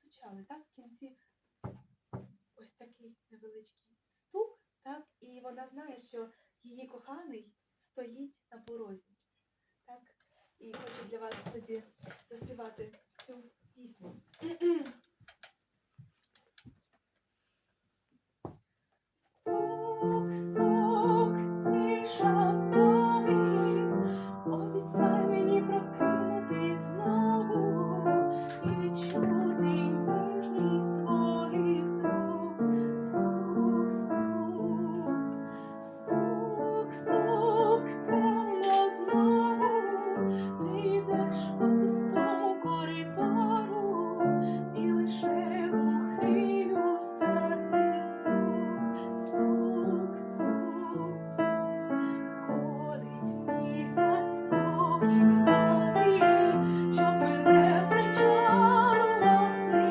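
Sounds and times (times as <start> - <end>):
piano chords: 19.5 - 59.9
woman singing: 19.5 - 59.9.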